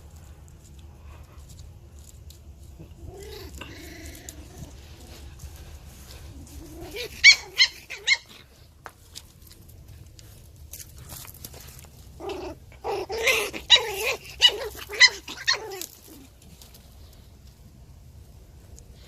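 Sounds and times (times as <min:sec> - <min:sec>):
dogs growling low: 0:02.6 - 0:08.5, 0:12.1 - 0:16.4
puppy yapping: 0:06.6 - 0:08.5, 0:12.2 - 0:16.3.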